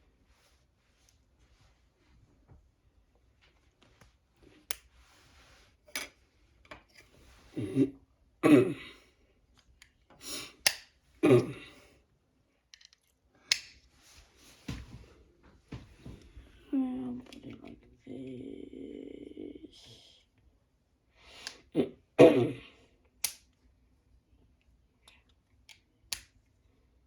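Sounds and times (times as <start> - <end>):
plastic parts clicking and rattling: 12.7 - 13.7.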